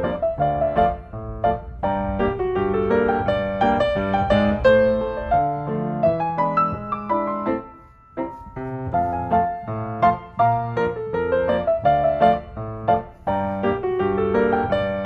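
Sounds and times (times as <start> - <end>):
gentle piano melody: 0.0 - 15.0.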